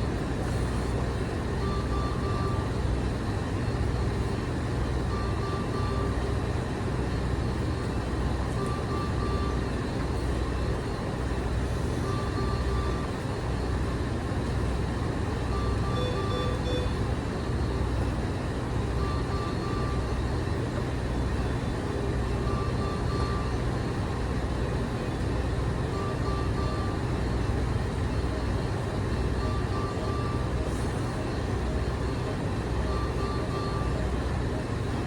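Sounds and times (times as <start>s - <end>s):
low machine hum: 0.0s - 35.0s
brief machine tone: 1.6s - 2.8s, 5.1s - 6.3s, 8.5s - 9.7s, 11.9s - 13.2s, 15.5s - 17.1s, 19.0s - 20.2s, 22.3s - 23.6s, 25.9s - 27.1s, 29.4s - 30.9s, 32.8s - 34.1s.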